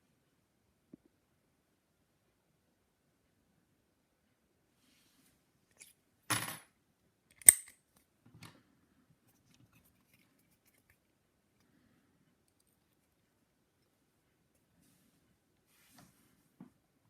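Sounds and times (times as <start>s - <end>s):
lock picks clicking in padlock: 7.3s - 7.8s.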